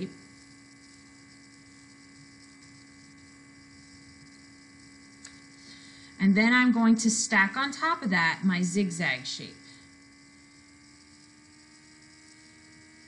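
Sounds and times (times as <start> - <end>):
faint electrical hum: 0.0 - 13.0
small tick: 5.2 - 5.5.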